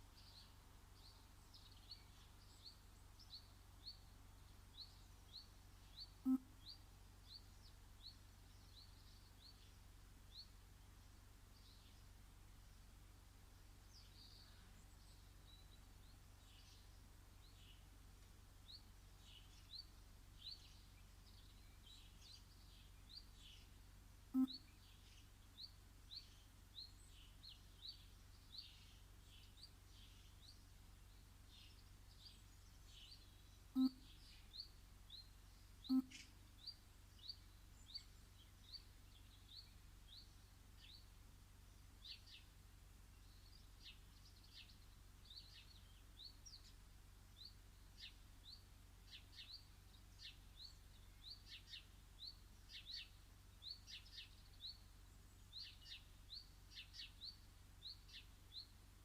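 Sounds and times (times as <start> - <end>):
faint bird calls: 4.8 - 7.4, 24.3 - 25.0, 33.7 - 34.7, 35.8 - 36.7
bird chirping high: 33.8 - 34.2, 35.8 - 36.3.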